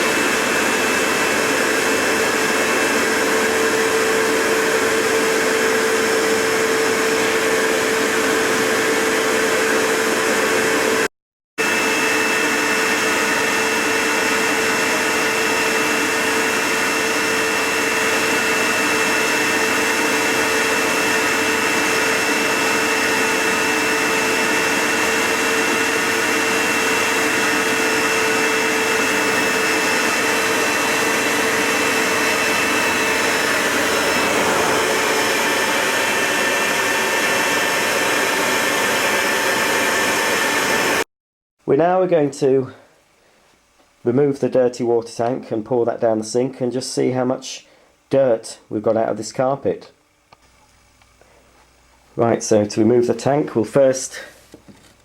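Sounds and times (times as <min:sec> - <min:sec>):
carpet washer motor and suction: 0:00.0 - 0:41.1.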